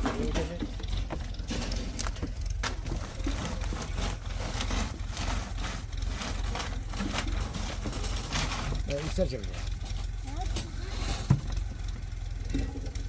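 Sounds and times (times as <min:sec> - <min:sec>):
steady low rumble: 0:00.0 - 0:13.0
wood crackling and snapping: 0:00.8 - 0:09.0.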